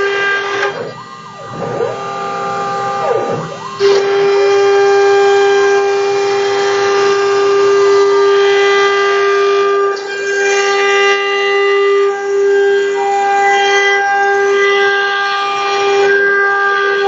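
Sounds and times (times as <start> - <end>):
faint gliding motor tone: 0.0 - 7.4
stepper motors whining: 0.0 - 12.1.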